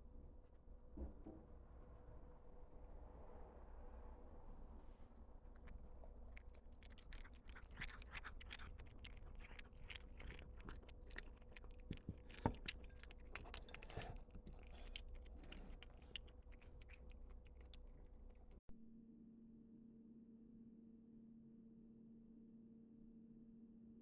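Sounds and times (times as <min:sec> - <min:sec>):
cat crunching dry food: 0:05.6 - 0:18.6.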